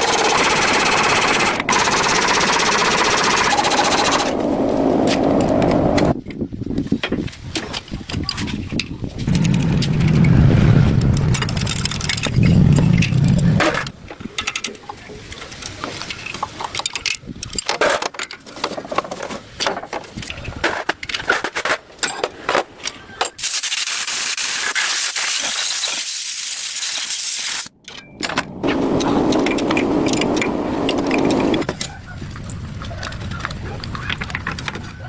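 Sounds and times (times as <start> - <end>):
low rushing noise: 1.7 - 6.2, 9.3 - 14.0, 28.2 - 31.6.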